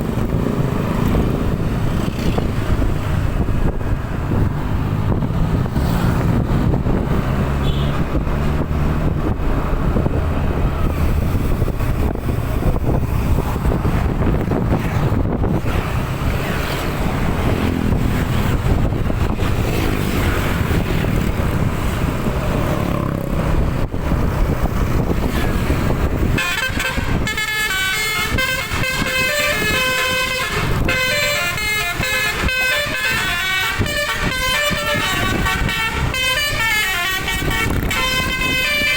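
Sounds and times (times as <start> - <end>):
road noise: 0.0 - 38.9
air horn playing a melody: 26.3 - 38.9.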